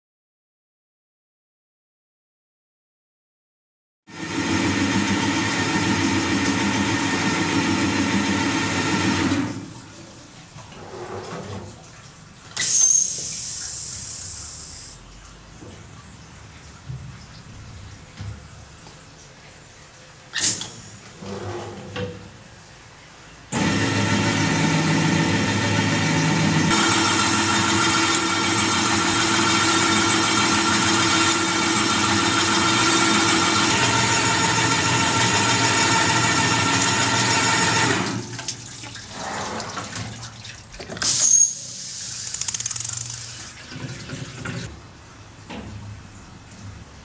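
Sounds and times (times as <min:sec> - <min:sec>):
brief high hiss: 0:12.6 - 0:15.0, 0:41.0 - 0:43.2
thread-cutting machine motor whine: 0:23.5 - 0:38.2
sharp click: 0:42.2 - 0:43.2.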